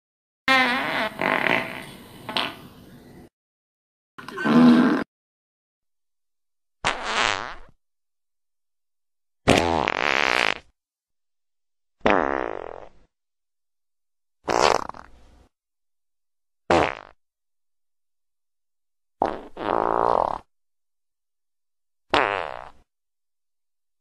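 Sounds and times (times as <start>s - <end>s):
fart sound effects: 0.5s - 2.6s, 4.2s - 5.1s, 6.8s - 7.8s, 9.5s - 10.7s, 12.0s - 13.0s, 14.4s - 15.1s, 16.7s - 17.2s, 19.2s - 20.5s, 22.1s - 22.9s.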